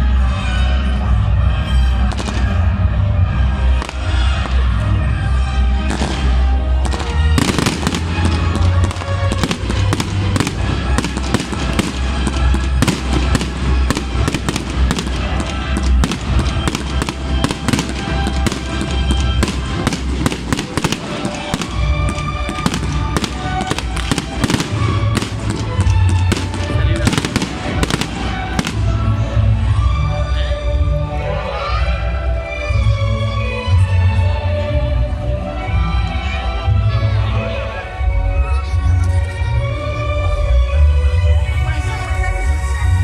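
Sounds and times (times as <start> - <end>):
fireworks bangs and crackling: 2.0 - 29.6.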